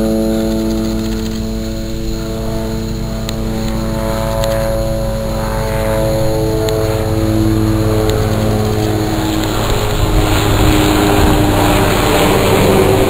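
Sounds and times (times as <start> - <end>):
aircraft engine drone: 0.0 - 13.0.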